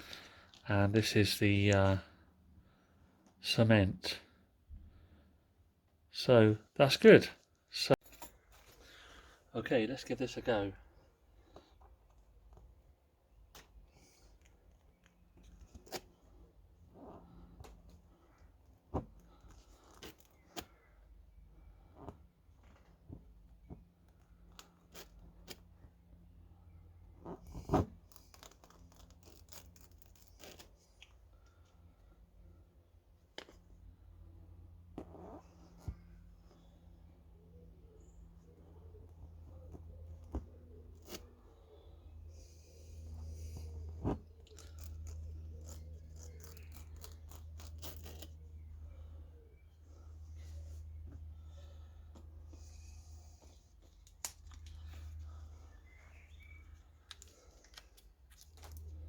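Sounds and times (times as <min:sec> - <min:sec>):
crunching scrapes and clicks: 0:43.4 - 0:48.5.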